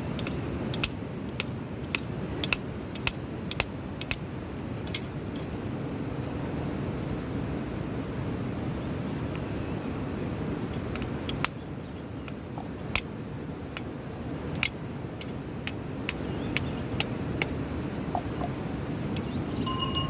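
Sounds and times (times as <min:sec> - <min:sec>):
steady low rumble: 0:14.8 - 0:20.0.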